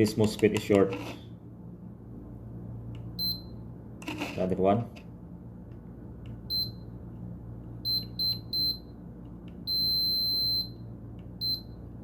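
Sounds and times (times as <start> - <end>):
multimeter beeps: 3.2 - 3.6, 6.4 - 7.0, 7.8 - 9.0, 9.6 - 11.8.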